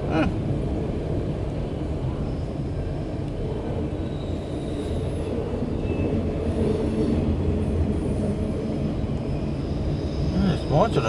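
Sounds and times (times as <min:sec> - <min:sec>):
steel wheels rumbling on rail: 0:00.0 - 0:11.0
faint high wheel squeals: 0:02.2 - 0:03.1, 0:03.9 - 0:07.1, 0:08.0 - 0:11.0.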